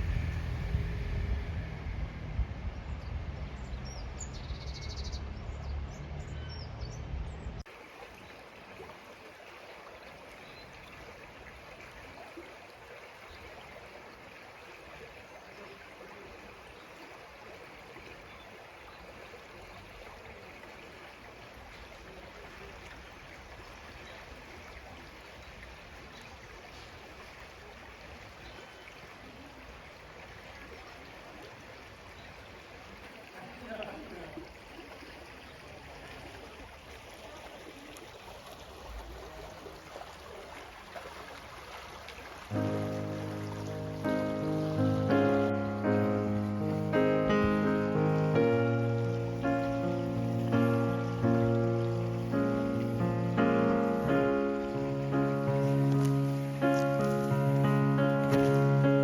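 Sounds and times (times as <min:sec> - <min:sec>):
loud low rumble: 0:00.0 - 0:04.4
stream flowing: 0:00.0 - 0:06.2, 0:07.6 - 0:59.0.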